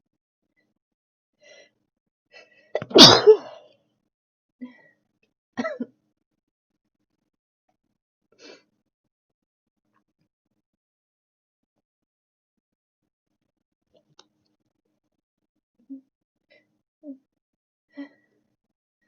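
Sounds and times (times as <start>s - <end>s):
person sneezing: 2.8s - 3.6s.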